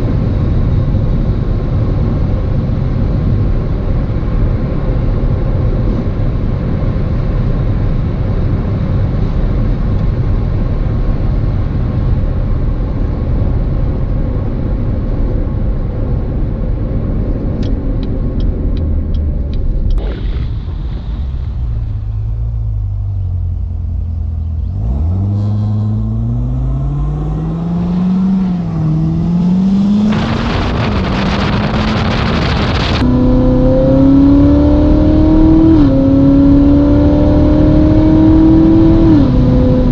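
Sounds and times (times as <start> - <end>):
car engine rumbling and accelerating: 0.0 - 39.9
light ticks: 17.6 - 20.0
exhaust rushing: 18.6 - 39.9.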